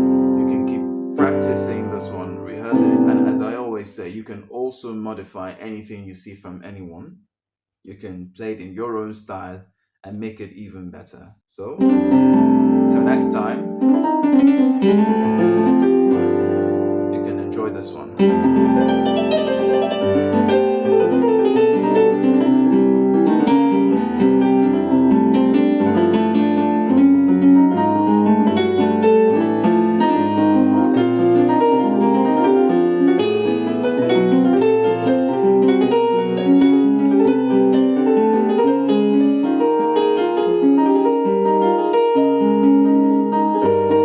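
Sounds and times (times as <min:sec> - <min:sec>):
piano chord progression: 0:00.0 - 0:03.9, 0:11.8 - 0:44.0.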